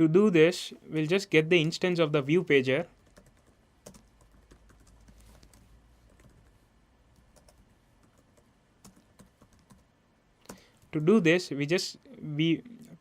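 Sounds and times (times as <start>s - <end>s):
keyboard typing: 3.0s - 6.5s, 7.2s - 9.8s.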